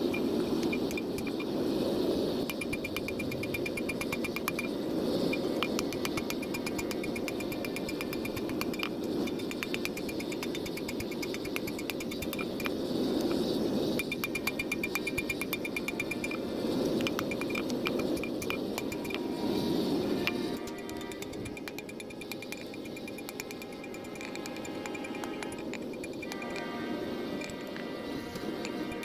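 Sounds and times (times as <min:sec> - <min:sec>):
steady rushing noise: 0:00.0 - 0:29.0
hammer striking iron: 0:05.3 - 0:12.6, 0:14.0 - 0:16.4, 0:17.0 - 0:19.4, 0:20.2 - 0:27.7.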